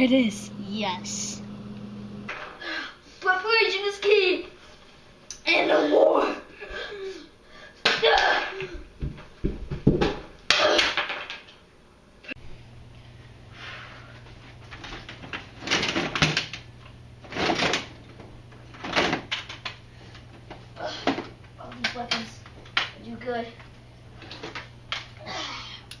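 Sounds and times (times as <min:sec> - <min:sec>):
steady low hum: 0:00.0 - 0:03.5, 0:11.8 - 0:26.0
objects clunking and rustling: 0:07.8 - 0:11.6, 0:13.6 - 0:25.3.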